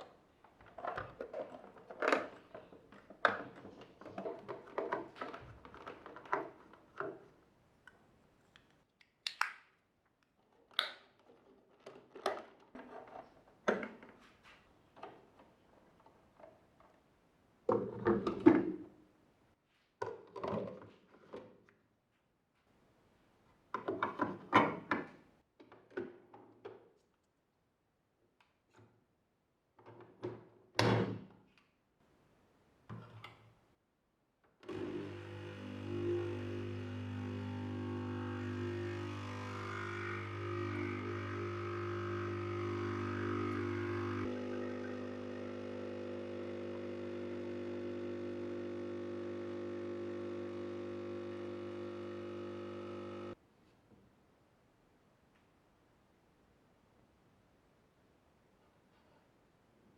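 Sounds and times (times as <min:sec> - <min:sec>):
coffee machine pump buzzing hum: 0:34.7 - 0:53.4.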